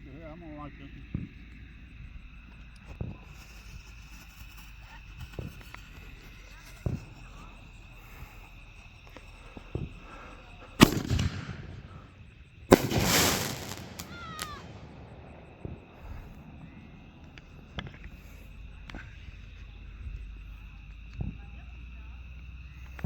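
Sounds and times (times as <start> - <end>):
faint fireworks pops: 1.0 - 19.3
fireworks crackling hiss: 2.4 - 19.0
fireworks bangs: 10.8 - 18.2.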